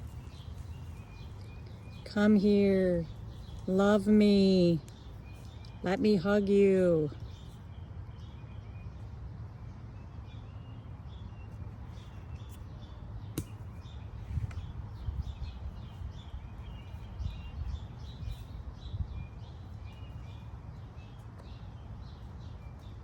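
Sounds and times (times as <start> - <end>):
small birds chirping: 0.0 - 23.0.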